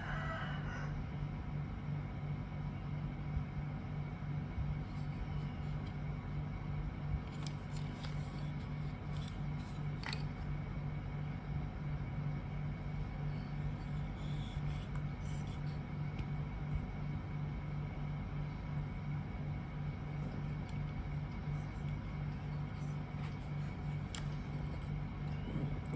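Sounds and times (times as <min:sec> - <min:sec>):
portable fan humming: 0:01.1 - 0:25.9
plastic fan handling clicks: 0:07.3 - 0:10.5.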